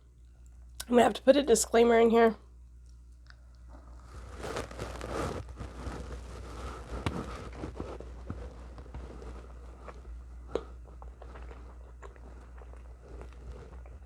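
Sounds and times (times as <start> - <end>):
food being chewed: 2.8 - 14.0
wet rustling and crinkling: 2.8 - 14.0.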